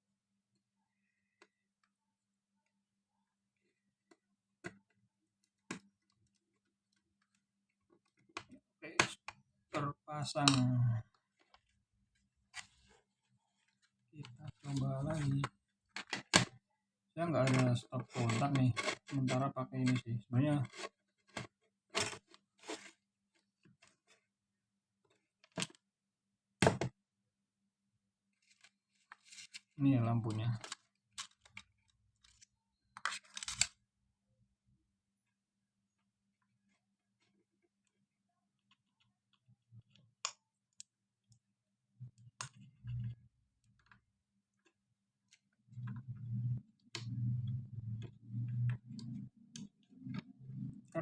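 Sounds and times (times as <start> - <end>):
clicks and rustles of wiring: 28.4 - 33.8, 38.6 - 51.0.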